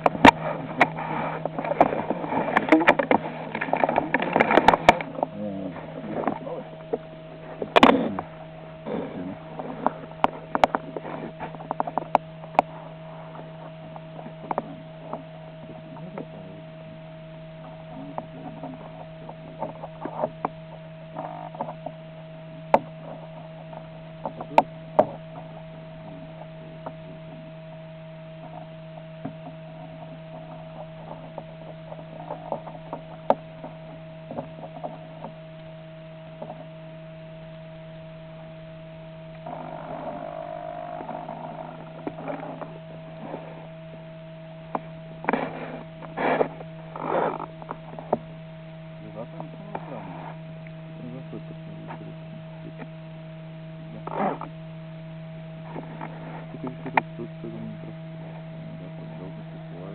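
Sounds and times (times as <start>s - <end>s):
sharp clicks and crackles: 0.0s - 8.3s, 8.9s - 16.3s, 28.4s - 36.7s
steady tonal hum: 0.0s - 59.9s.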